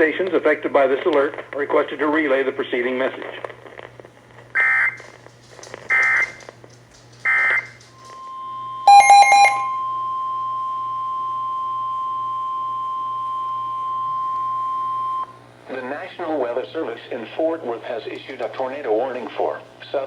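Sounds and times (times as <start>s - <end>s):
single-pitch warning alarm tone: 7.3s - 15.3s
screeching data blips: 8.9s - 9.8s.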